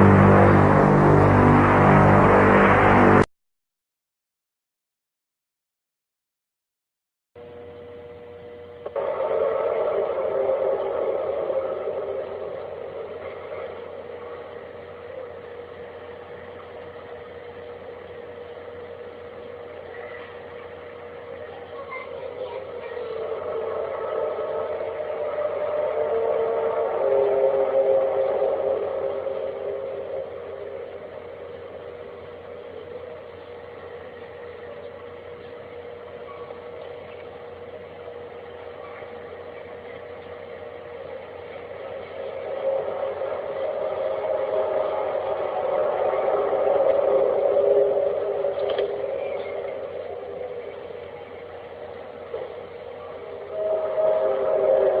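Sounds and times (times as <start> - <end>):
noisy background: 0.0 - 3.3, 7.4 - 55.0
steady droning hum: 0.0 - 3.3, 7.4 - 55.0.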